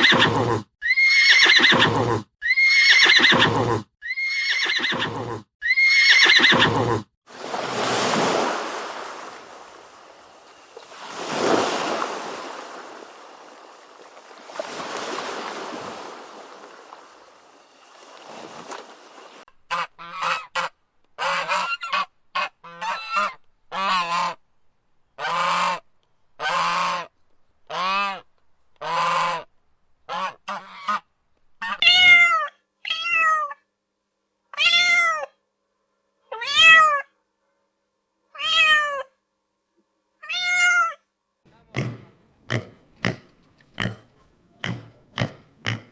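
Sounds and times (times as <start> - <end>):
rising and falling animal calls: 0.0 - 7.0.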